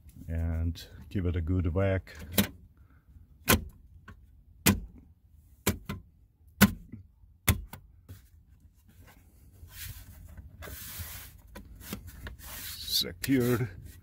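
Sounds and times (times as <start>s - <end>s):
soft rustling: 8.1s - 14.0s.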